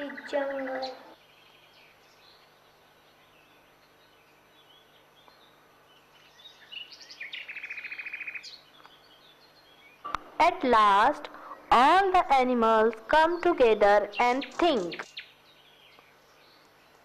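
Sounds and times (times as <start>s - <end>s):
bird chirping: 0.0s - 12.4s, 13.1s - 17.0s
bird high trill: 14.1s - 15.4s.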